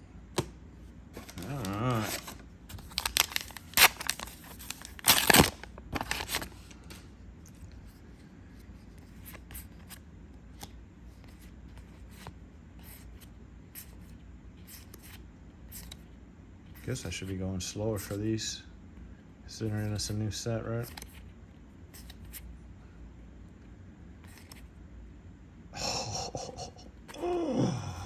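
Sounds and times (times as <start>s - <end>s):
foil pack ripping: 1.2s - 6.6s.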